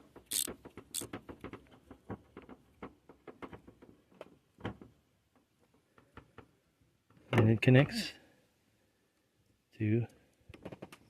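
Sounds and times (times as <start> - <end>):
plastic nut clicking: 0.3 - 1.1.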